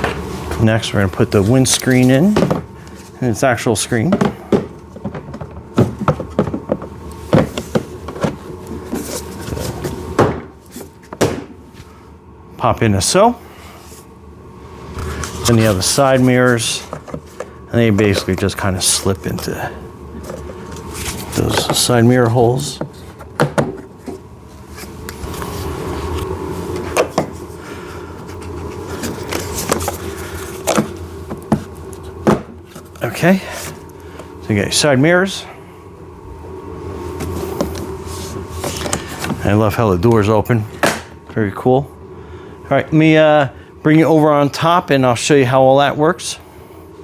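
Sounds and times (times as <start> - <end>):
steady background hum: 0.0 - 47.0
hard plastic parts knocking: 4.1 - 8.4.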